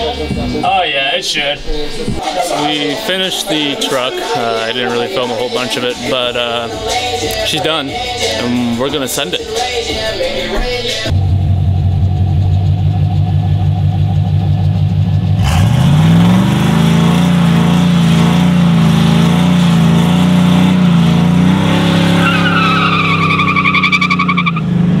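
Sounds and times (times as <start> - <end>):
truck engine revving: 0.0 - 25.0
tires squealing: 13.2 - 24.8.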